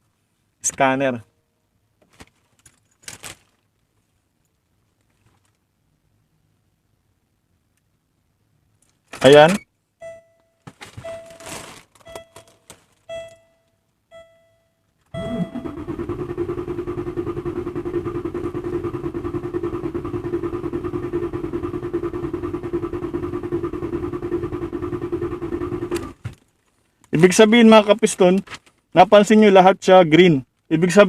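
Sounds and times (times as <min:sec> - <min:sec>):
short electronic beeps: 0:09.5 - 0:11.4, 0:12.1 - 0:15.8
engine cranking without firing: 0:15.1 - 0:26.3.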